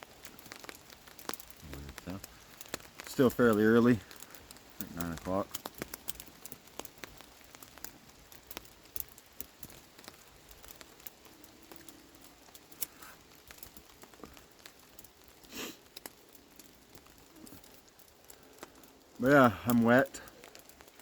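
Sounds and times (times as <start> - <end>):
rain pattering on a tarp: 0.0 - 21.0
faint hiss: 1.6 - 5.5, 15.4 - 16.0.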